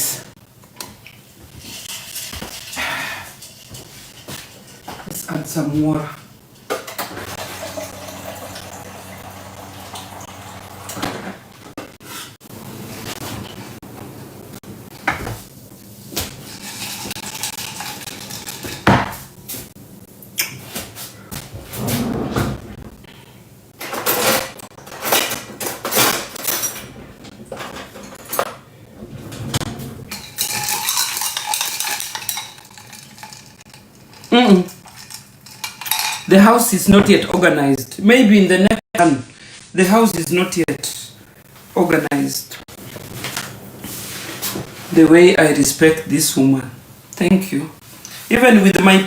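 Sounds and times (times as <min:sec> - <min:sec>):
water running into container: 0:07.1 - 0:11.4, 0:30.1 - 0:36.3
dishes and cutlery clattering: 0:23.8 - 0:26.9, 0:29.3 - 0:36.4.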